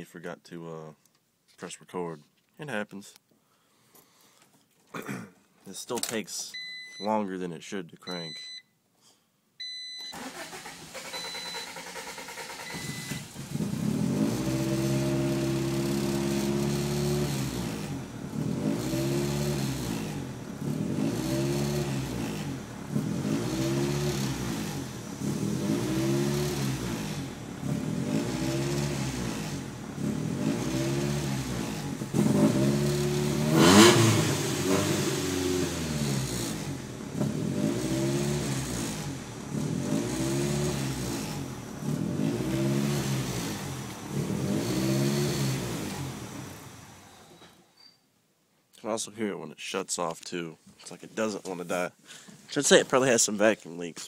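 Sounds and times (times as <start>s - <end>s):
engine cranking: 10.2s - 35.2s
car engine revving: 10.2s - 47.2s.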